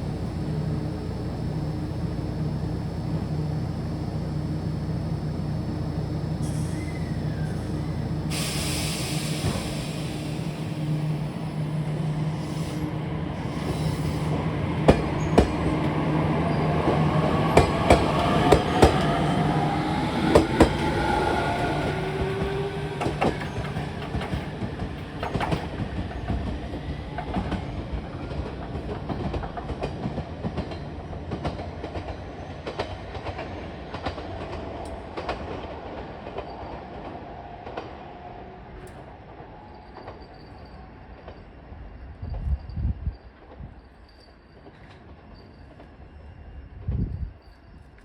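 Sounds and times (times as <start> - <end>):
train motors whining: 0.0 - 29.5
wheels clacking over rail joints: 13.4 - 36.6.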